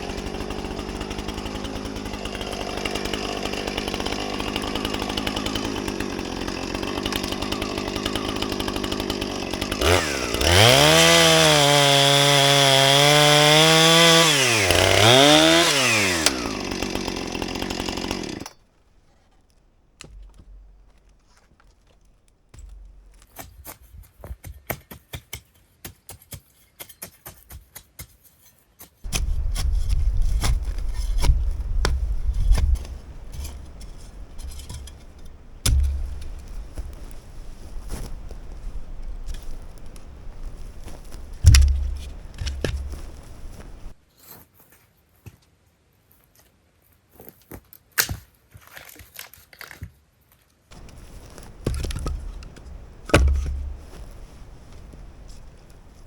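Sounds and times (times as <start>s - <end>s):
chainsaw running and revving: 0.0s - 18.5s, 29.1s - 44.0s, 50.7s - 56.0s.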